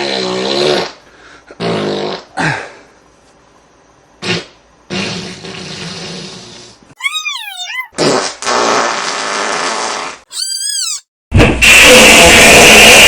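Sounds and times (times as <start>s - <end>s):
fart sound effects: 1.6s - 2.3s, 4.2s - 13.0s.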